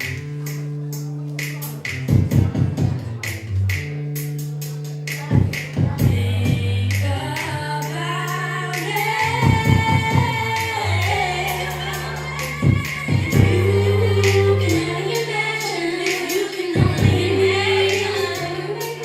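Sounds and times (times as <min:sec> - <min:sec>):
bass line and drum beat: 0:00.0 - 0:19.0
person singing: 0:05.0 - 0:19.0.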